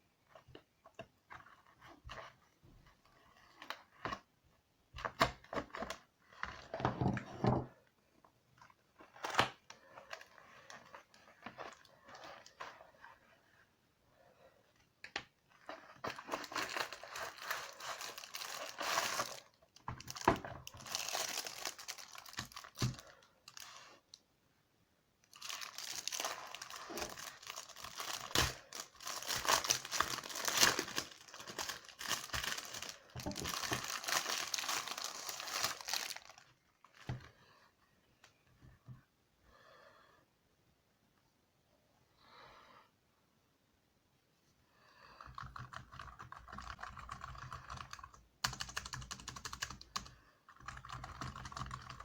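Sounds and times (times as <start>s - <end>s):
packaging wrap crinkling and tearing: 16.0s - 23.9s, 25.2s - 37.1s.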